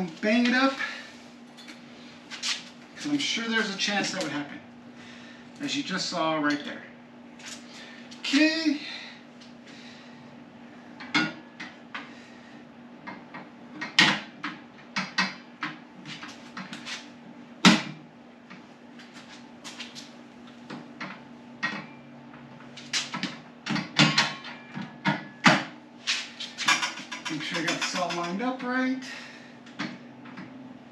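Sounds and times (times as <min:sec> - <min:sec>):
steady low hum: 0:00.0 - 0:30.9
metal hardware knocking and clunking: 0:26.6 - 0:28.5.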